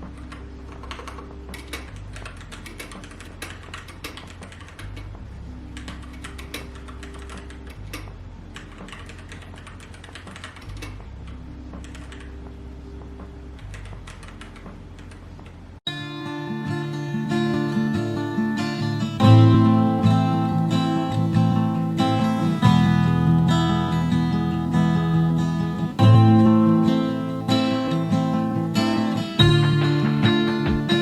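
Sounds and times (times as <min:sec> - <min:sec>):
soft background music: 0:00.0 - 0:31.0
keyboard typing: 0:00.2 - 0:05.0, 0:08.6 - 0:10.7.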